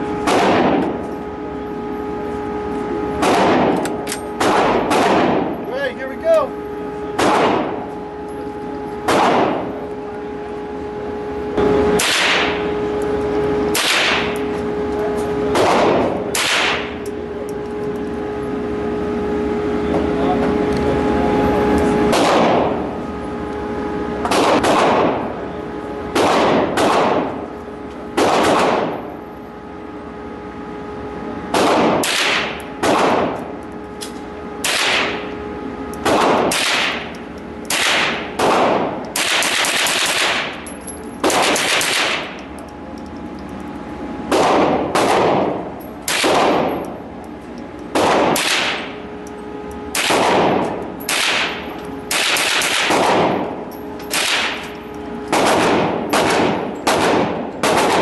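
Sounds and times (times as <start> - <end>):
gunshots with echo: 0.2 - 1.0, 3.2 - 5.6, 7.2 - 7.8, 9.0 - 9.7, 12.0 - 12.7, 13.7 - 14.4, 15.5 - 17.0, 22.1 - 22.8, 24.3 - 25.3, 26.1 - 27.4, 28.2 - 28.9, 31.5 - 33.4, 34.6 - 35.2, 36.0 - 37.1, 37.7 - 40.6, 41.2 - 42.4, 44.3 - 46.8, 47.9 - 49.0, 49.9 - 53.5, 54.1 - 54.6, 55.3 - 58.0.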